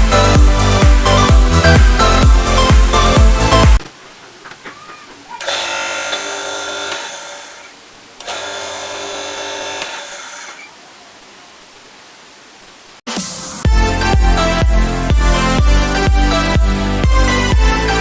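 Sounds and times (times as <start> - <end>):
blender whirring: 5.4 - 10.6
motor humming: 5.4 - 10.7.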